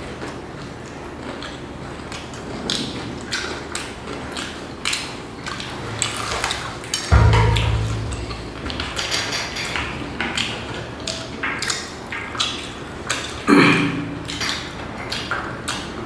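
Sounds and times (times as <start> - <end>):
low thump: 7.1 - 9.3.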